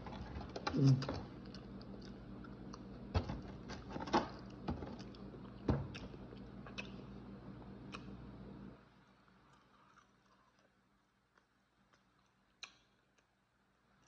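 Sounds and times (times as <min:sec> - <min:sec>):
steady low hum: 0:00.0 - 0:14.0
chewing fried food: 0:00.7 - 0:03.1, 0:04.4 - 0:08.2, 0:09.3 - 0:13.4.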